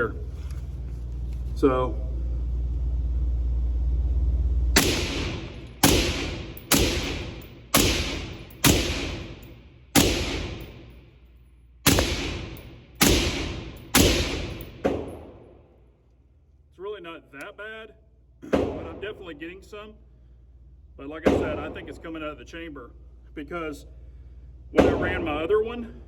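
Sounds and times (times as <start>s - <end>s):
low steady rumble: 0.0s - 26.0s
rifle shots with echo: 4.8s - 11.0s, 11.8s - 15.5s, 21.2s - 22.0s, 24.8s - 25.4s.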